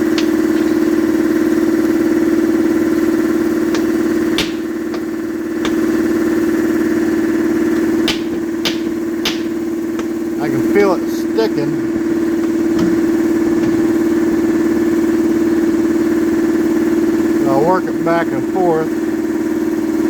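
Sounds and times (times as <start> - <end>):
air compressor humming: 0.0 - 20.0.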